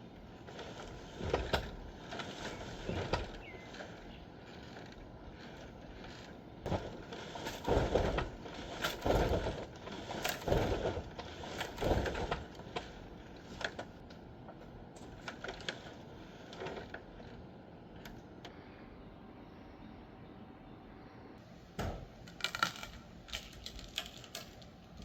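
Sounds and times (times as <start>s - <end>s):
heavy demolition knocks and crashes: 6.6s - 13.8s.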